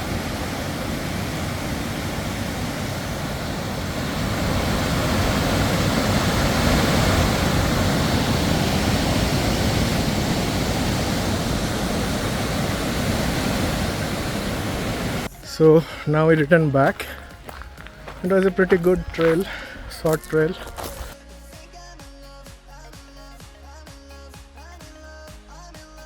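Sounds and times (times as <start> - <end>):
waterfall roaring: 0.0 - 15.3.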